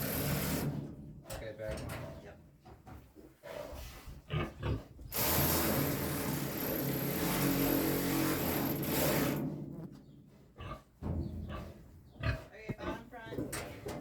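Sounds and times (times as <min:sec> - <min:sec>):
power drill running: 0:05.1 - 0:09.4.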